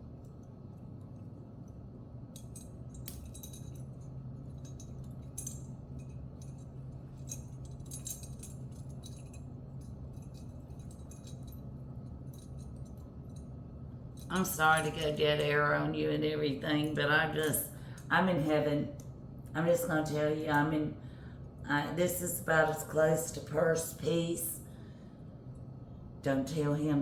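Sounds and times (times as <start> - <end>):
steady low hum: 0.0 - 27.0
metal bag hardware jingling: 2.4 - 13.5.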